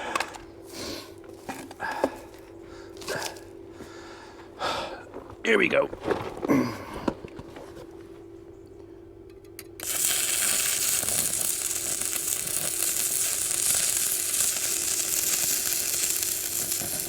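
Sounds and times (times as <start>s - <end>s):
arc welder crackling sizzle: 9.7s - 17.0s.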